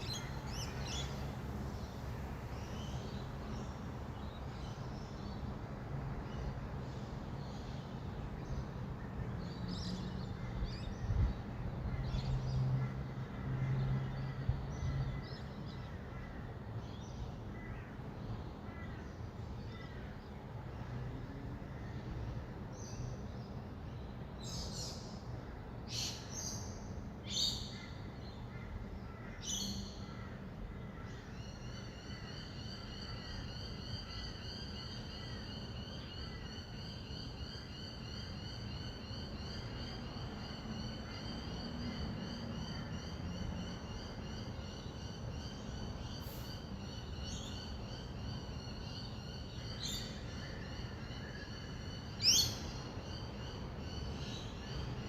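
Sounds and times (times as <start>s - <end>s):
distant city traffic hum: 0.0s - 55.0s
lorikeets screeching: 31.8s - 54.8s.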